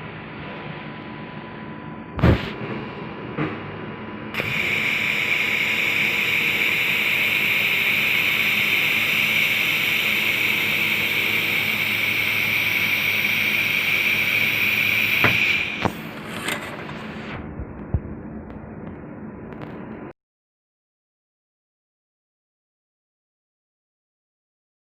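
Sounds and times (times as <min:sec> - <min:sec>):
laser welder hissing: 0:02.2 - 0:02.6, 0:04.4 - 0:17.4.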